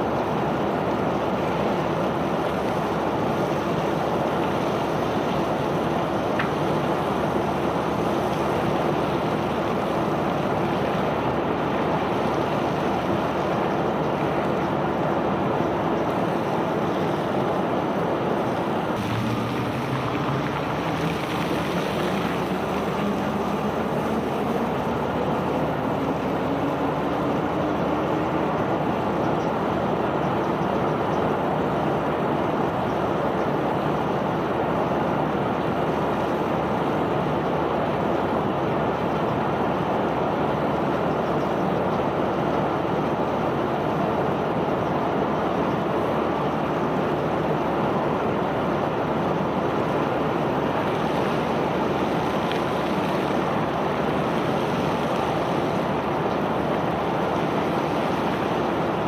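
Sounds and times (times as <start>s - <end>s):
engine tone: 0.0s - 59.0s
steady rushing noise: 15.2s - 30.2s.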